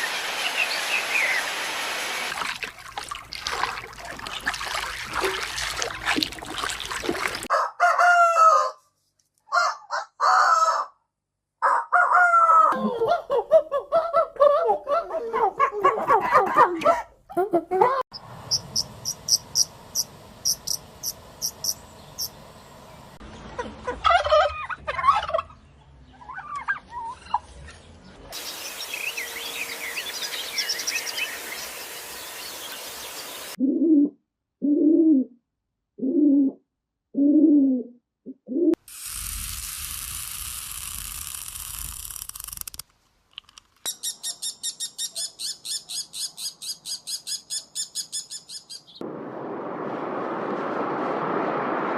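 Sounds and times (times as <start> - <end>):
rapid high chirping: 18.5 - 22.4.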